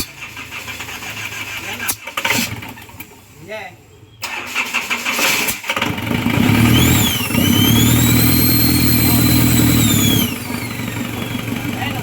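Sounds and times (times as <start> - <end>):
diesel engine revving: 0.0 - 3.1, 4.2 - 12.0
turbo whine: 6.5 - 11.6.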